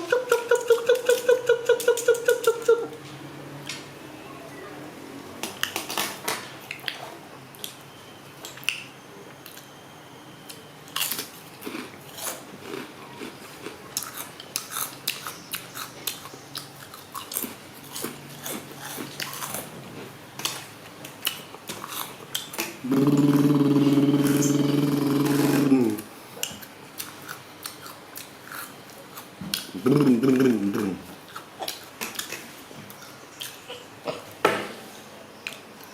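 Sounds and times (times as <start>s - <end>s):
loud buzzing hum: 22.8s - 26.0s.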